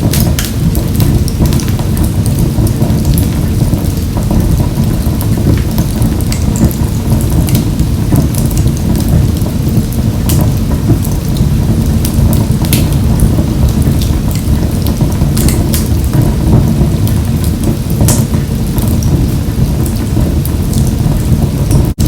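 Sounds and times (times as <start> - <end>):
low rumble of flame: 0.0 - 22.0
wood crackling and popping: 0.0 - 22.0.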